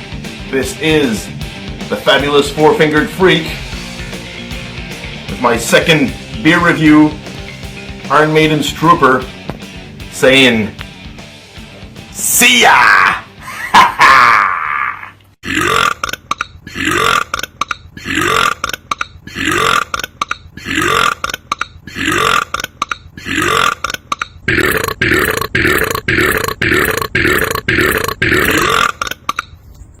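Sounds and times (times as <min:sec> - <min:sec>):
man burping: 0:13.1 - 0:29.4.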